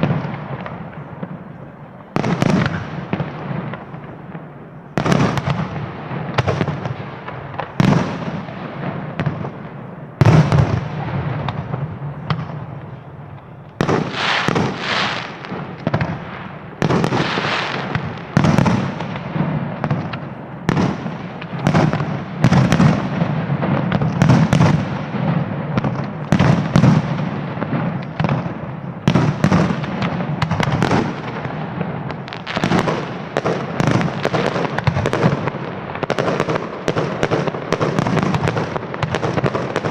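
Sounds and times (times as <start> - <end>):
fireworks crackling: 0.0 - 39.9.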